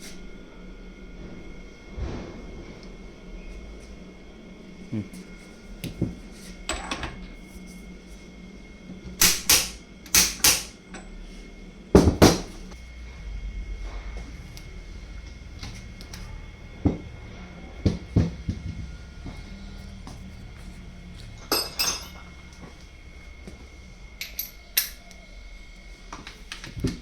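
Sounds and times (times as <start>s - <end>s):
faint steady hum: 0.0s - 27.0s
metal parts and tools knocking: 9.2s - 10.7s, 21.5s - 22.2s, 24.2s - 25.0s.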